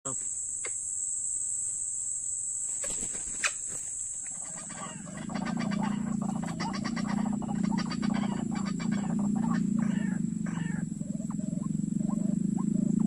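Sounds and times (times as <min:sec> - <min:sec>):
high-pitched insect drone: 0:00.1 - 0:13.0
waterhen croaking call: 0:04.3 - 0:13.0.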